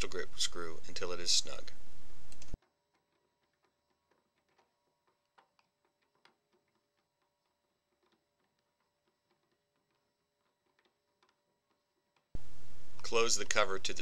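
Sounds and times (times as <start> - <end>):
man talking: 0.0 - 1.8, 13.0 - 14.0.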